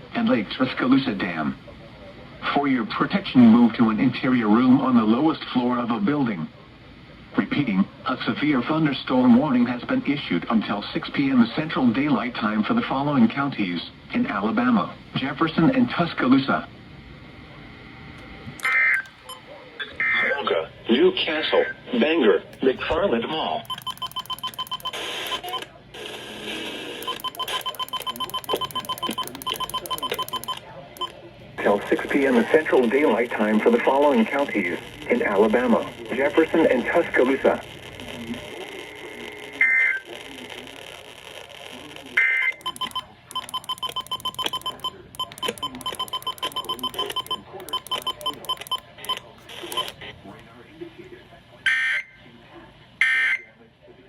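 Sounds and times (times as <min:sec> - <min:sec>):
electronic alert beeps: 0:23.7 - 0:25.6, 0:27.0 - 0:31.1, 0:42.6 - 0:49.9.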